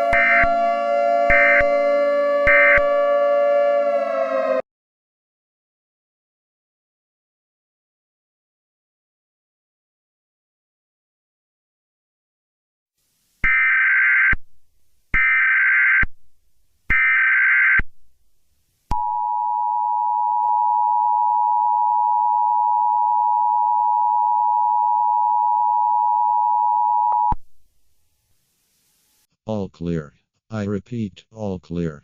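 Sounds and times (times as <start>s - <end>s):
steady dual tone attention signal: 0.0s - 4.6s, 18.9s - 27.4s.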